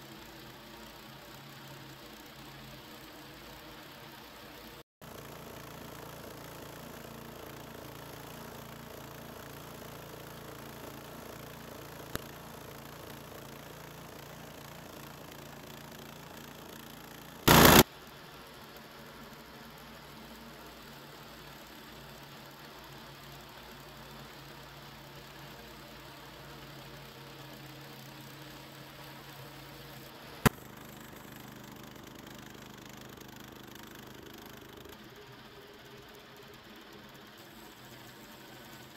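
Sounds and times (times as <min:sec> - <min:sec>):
small gasoline engine running: 0:00.0 - 0:38.9
gas engine running: 0:12.7 - 0:17.8
sharp click: 0:17.5 - 0:17.8.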